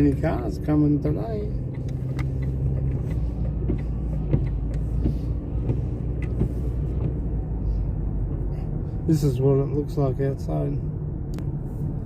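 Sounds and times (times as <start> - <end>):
car engine hum: 0.0 - 12.0
road noise: 0.0 - 12.0
small knocks and rattles: 1.8 - 7.3.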